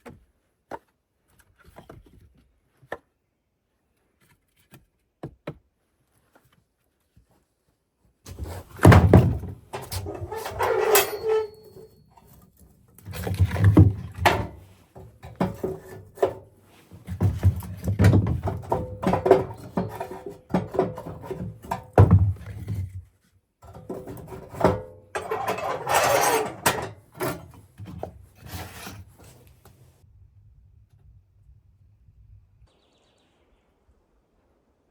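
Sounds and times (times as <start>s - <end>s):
wooden knocks and thumps: 8.3s - 11.4s, 13.1s - 23.0s
wood rubbing and scraping: 8.3s - 12.4s, 13.0s - 23.0s, 23.7s - 29.9s.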